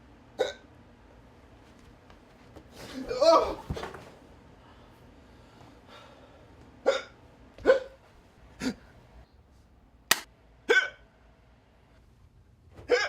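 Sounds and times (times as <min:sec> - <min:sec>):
person hiccuping: 0:00.4 - 0:00.6, 0:06.9 - 0:08.0, 0:10.7 - 0:11.0.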